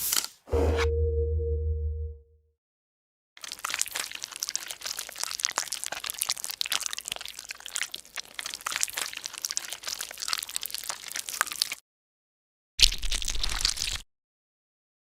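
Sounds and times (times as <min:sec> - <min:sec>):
slime squishing: 0:03.4 - 0:11.8.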